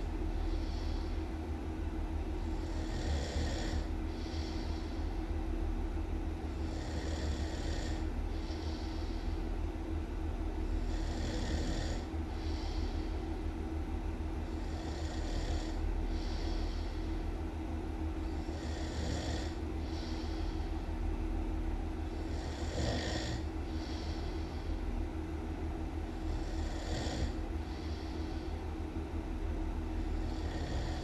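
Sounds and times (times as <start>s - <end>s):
constant low rumble: 0.0s - 31.0s
person snoring loudly: 2.5s - 3.9s, 6.7s - 8.0s, 10.8s - 12.1s, 14.6s - 16.5s, 18.4s - 19.6s, 22.2s - 24.1s, 26.2s - 27.4s, 30.2s - 31.0s.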